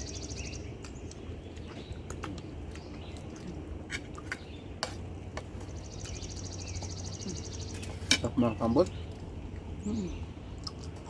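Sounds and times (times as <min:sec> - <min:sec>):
low steady hum: 0:00.0 - 0:11.0
chewing clicks and lip smacks: 0:10.6 - 0:11.0.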